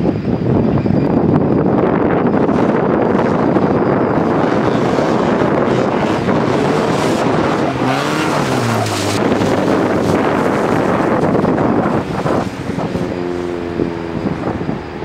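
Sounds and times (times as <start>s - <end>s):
loud steady rushing noise: 0.0s - 15.0s
car engine revving: 2.3s - 15.0s.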